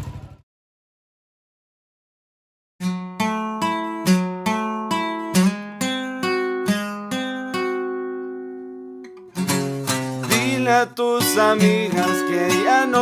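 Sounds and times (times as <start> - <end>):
acoustic guitar strumming chords: 2.8 - 13.0.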